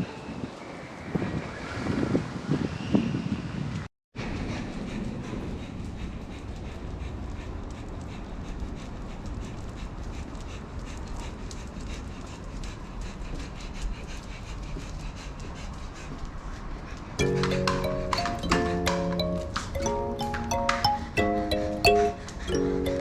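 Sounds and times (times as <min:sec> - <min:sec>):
dog panting: 0:04.7 - 0:23.0
music: 0:17.2 - 0:23.0.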